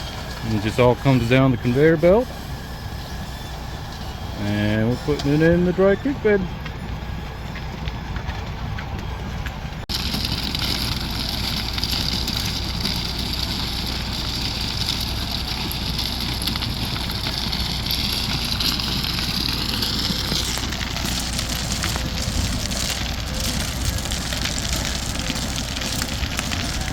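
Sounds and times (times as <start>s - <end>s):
truck engine running: 0.0s - 26.9s
rock pouring off conveyor: 9.9s - 26.9s.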